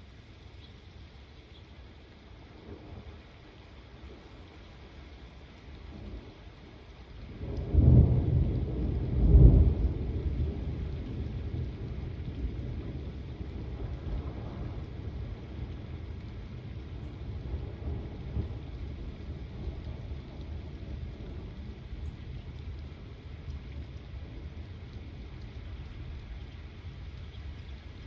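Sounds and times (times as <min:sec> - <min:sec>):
steady rain: 0:00.0 - 0:28.0
thunder rumbling: 0:07.4 - 0:26.2.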